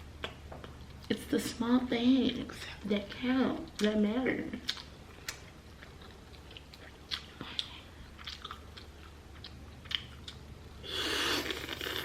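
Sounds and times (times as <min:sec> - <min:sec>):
mouth clicks and smacks: 0:04.6 - 0:10.4
person chewing: 0:04.6 - 0:12.0.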